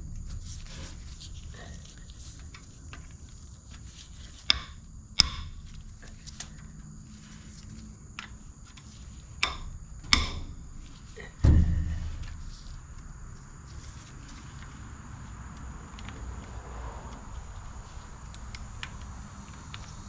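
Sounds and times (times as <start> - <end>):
heavy thump with ringing: 9.4 - 13.4.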